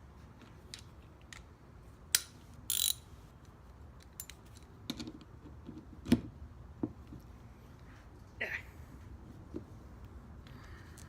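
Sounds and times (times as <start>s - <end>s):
sharp metal clicks: 2.1s - 3.0s
tool ratcheting: 2.1s - 3.0s.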